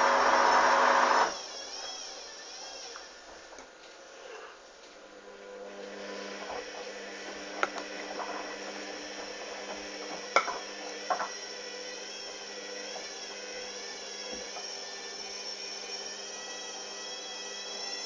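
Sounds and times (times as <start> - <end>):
washing machine motor hum: 0.0 - 1.4, 5.2 - 18.0.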